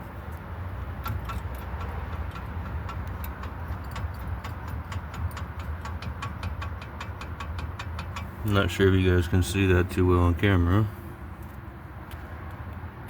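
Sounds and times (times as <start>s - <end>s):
steady low rumble: 0.0s - 13.0s
rapid clicking of steering joint: 0.3s - 8.8s.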